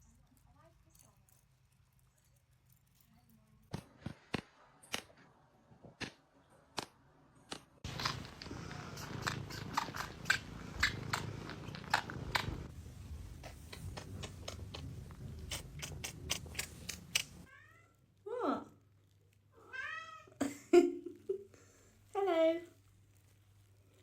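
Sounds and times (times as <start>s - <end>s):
cat purring: 7.8s - 17.5s
chewing clicks: 7.9s - 12.6s, 13.4s - 17.4s.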